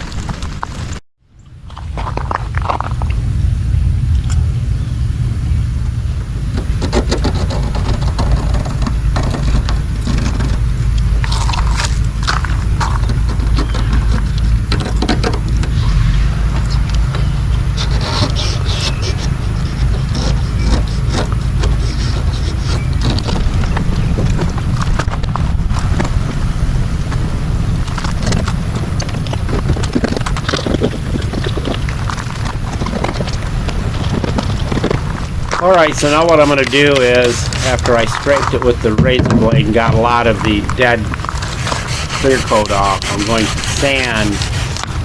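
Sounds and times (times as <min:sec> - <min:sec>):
steady low rumble: 0:00.0 - 0:45.0
razor blade scraping paint: 0:06.8 - 0:10.6, 0:12.6 - 0:15.6, 0:17.8 - 0:23.8, 0:35.8 - 0:38.7, 0:41.3 - 0:45.0.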